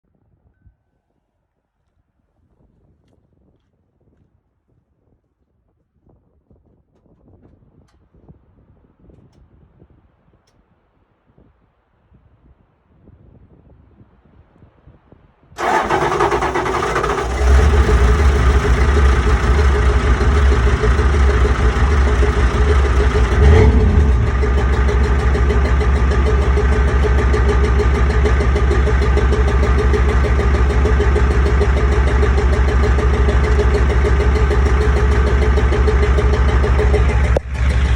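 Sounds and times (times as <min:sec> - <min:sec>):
diesel engine cranking and idling: 0:15.6 - 0:37.9.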